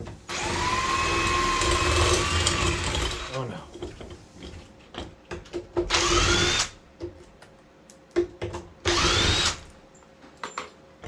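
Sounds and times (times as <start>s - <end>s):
power drill whine: 0.3s - 3.4s, 5.9s - 6.8s, 8.9s - 9.6s
clicks and knocks of hardware: 10.0s - 10.8s.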